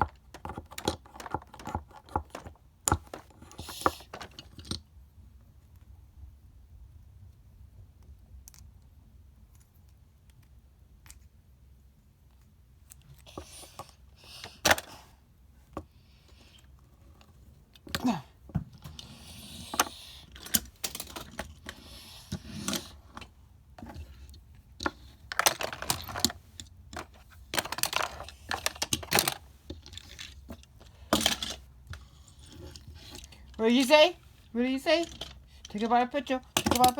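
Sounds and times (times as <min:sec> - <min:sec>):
small hard objects clattering: 0:24.8 - 0:36.9.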